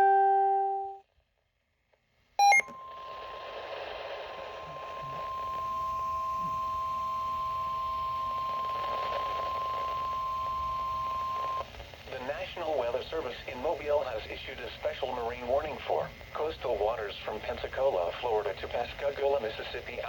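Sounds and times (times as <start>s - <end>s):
electronic blip: 2.4s - 2.7s
steady high warning beep: 2.4s - 2.8s, 4.7s - 11.6s
radio hiss: 3.4s - 20.0s.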